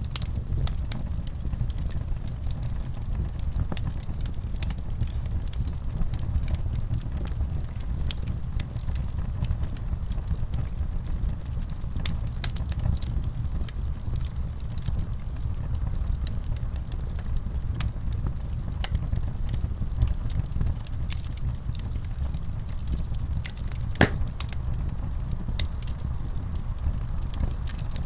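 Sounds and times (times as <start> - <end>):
wood fire crackling and popping: 23.3 - 26.2.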